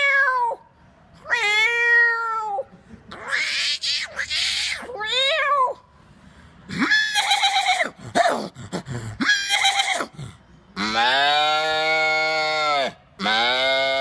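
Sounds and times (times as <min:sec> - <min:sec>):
person imitating animal calls: 0:06.7 - 0:14.0.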